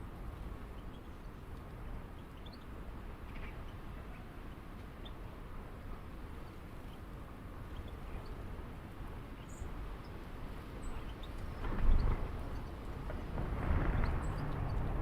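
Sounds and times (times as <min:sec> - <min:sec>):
low rumble: 0:11.6 - 0:15.0.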